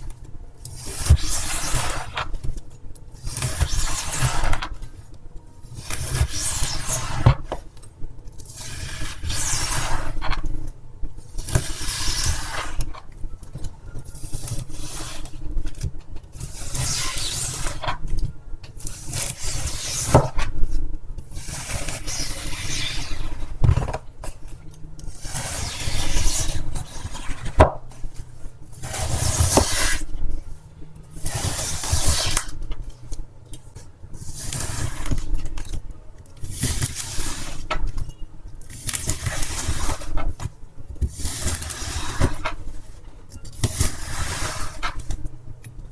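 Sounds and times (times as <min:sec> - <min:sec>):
wet floral foam being cut: 0:00.7 - 0:02.3, 0:03.2 - 0:04.8, 0:05.7 - 0:07.6, 0:11.3 - 0:12.9, 0:14.3 - 0:18.0, 0:25.1 - 0:27.8, 0:28.8 - 0:30.1, 0:31.2 - 0:32.6, 0:36.5 - 0:37.6, 0:41.1 - 0:42.5.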